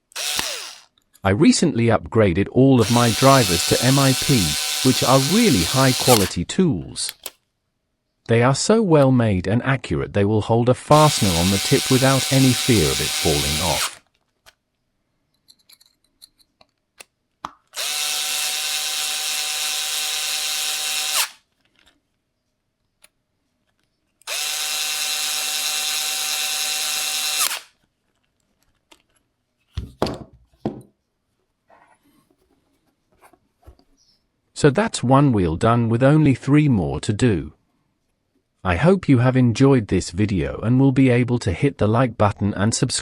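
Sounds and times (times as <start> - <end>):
electric screwdriver whirring: 0.0 - 0.9, 2.8 - 6.3, 10.9 - 14.0, 17.8 - 21.5, 24.3 - 27.7.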